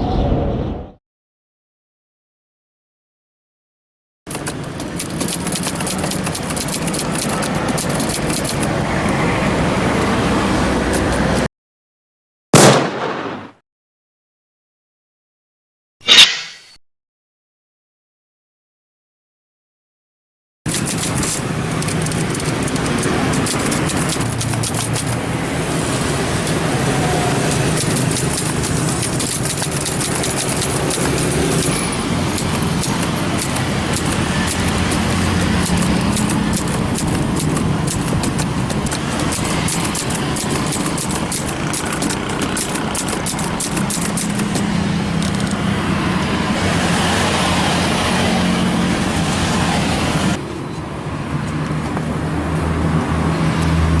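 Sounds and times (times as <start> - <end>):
typewriter keystrokes clacking: 4.3 - 8.9, 20.7 - 25.4, 26.0 - 45.6
road traffic noise: 4.3 - 11.5, 20.7 - 54.0.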